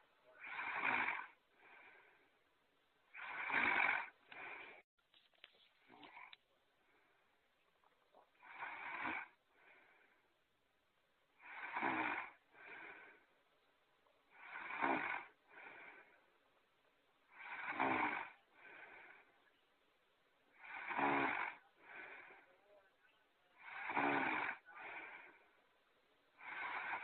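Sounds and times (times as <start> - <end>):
soft breath: 0.0 - 2.5, 3.1 - 10.6, 11.3 - 19.9, 20.5 - 27.0
loud snores: 0.3 - 2.1, 3.1 - 4.8, 8.4 - 10.0, 11.4 - 13.3, 14.3 - 16.2, 17.3 - 19.3, 20.5 - 22.6, 23.6 - 25.5, 26.4 - 27.0.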